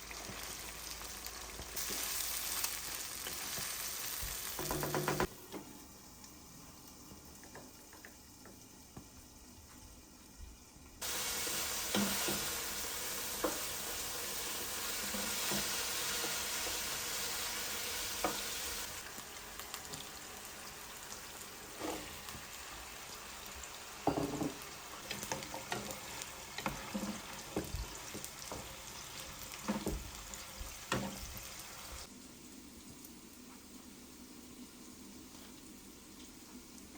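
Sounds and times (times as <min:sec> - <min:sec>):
food sizzling in a pan: 0:00.0 - 0:36.9
utensil stirring in pan: 0:11.0 - 0:19.1, 0:24.0 - 0:32.1.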